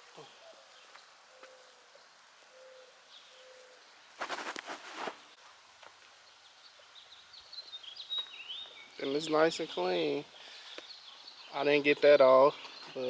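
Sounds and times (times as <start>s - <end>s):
brief noisy rustle: 4.2s - 5.2s.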